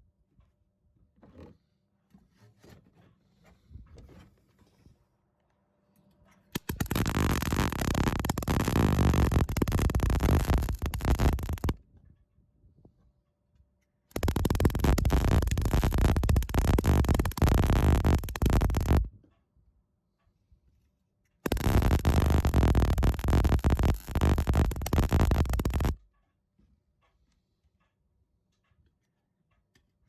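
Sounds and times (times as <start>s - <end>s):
welding arc crackling: 6.6s - 11.8s, 14.1s - 19.1s, 21.5s - 26.0s.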